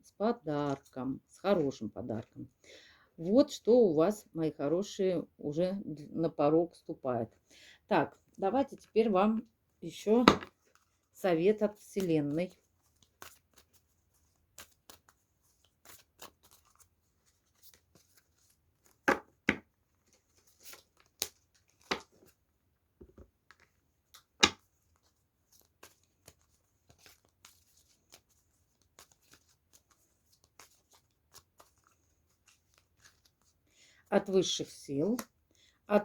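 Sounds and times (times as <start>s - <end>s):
cards being shuffled: 10.1s - 11.1s, 11.7s - 33.7s, 34.6s - 35.4s.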